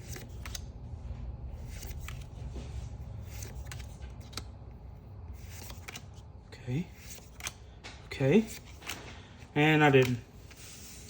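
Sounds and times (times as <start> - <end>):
low steady hum: 0.0 - 11.0
trading cards flicked by hand: 5.4 - 6.1, 9.8 - 10.8.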